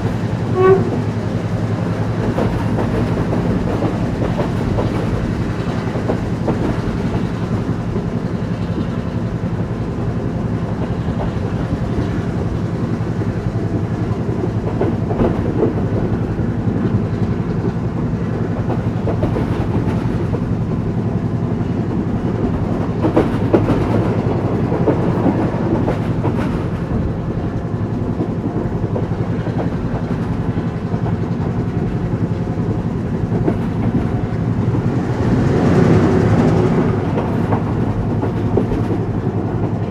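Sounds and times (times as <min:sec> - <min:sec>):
train rattling: 0:00.0 - 0:39.9
train wheels rumbling on rails: 0:00.0 - 0:39.9
clicks over rail joints: 0:01.9 - 0:09.2, 0:22.0 - 0:27.6, 0:28.2 - 0:39.9.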